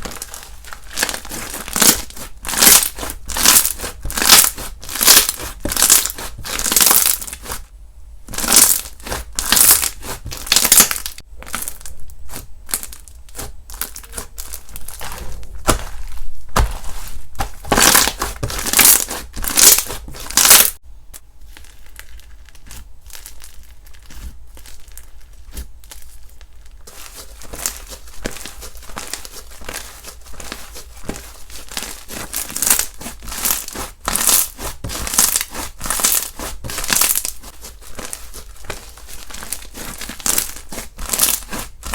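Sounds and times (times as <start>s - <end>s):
slime squishing and crackling: 0.0s - 7.6s, 8.3s - 41.9s.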